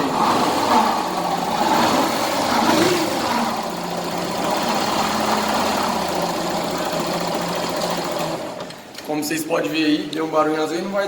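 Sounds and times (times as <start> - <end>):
motorcycle engine running: 0.0 - 8.6
mechanical grinding noise: 0.0 - 8.8.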